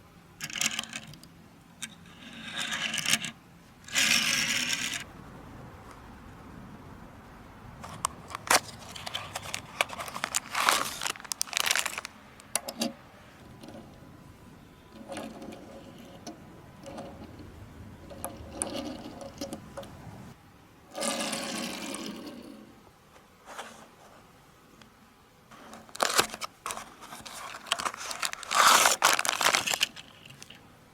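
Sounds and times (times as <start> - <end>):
toy cars clicking and scraping: 0.4 - 5.1, 7.8 - 13.0, 14.9 - 17.4, 18.0 - 19.9, 21.0 - 22.6, 25.7 - 30.6
toy packaging rustling: 7.8 - 12.5, 25.6 - 30.6.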